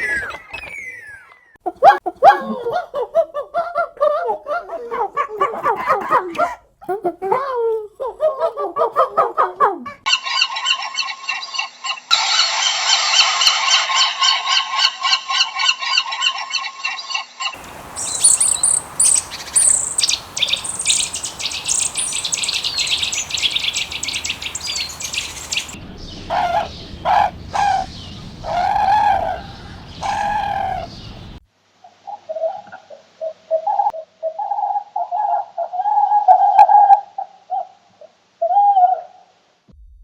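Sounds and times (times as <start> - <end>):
geese honking: 17.6 - 25.8
high bird chirps: 17.6 - 25.8
low bird calls: 17.6 - 25.8.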